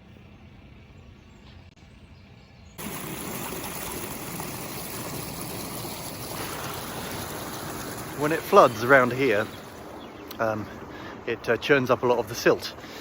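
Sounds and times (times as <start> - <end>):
faint outdoor background: 0.0 - 13.0
rush of flowing water: 2.8 - 13.0.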